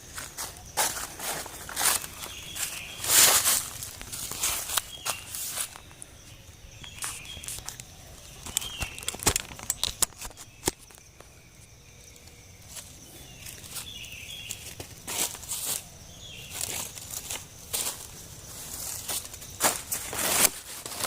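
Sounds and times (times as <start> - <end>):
footsteps in dry leaves: 0.0 - 9.3, 12.6 - 21.0
sharp knocks and clicks: 8.4 - 11.0.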